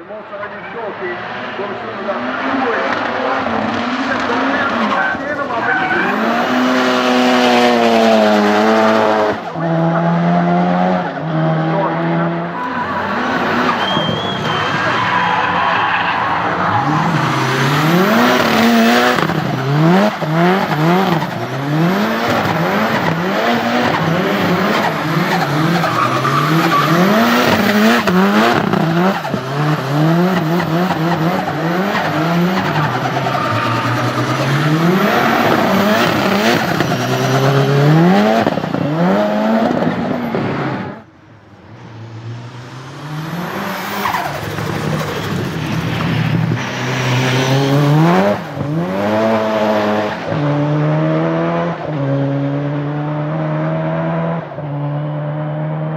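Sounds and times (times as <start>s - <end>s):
car engine revving: 0.0s - 55.9s
tyres squealing: 12.5s - 39.3s.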